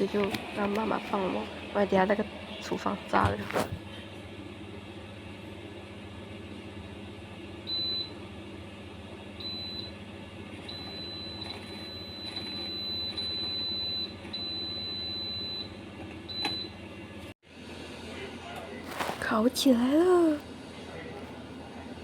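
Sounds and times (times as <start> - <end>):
oven control beeping: 7.7 - 8.2, 9.4 - 16.8.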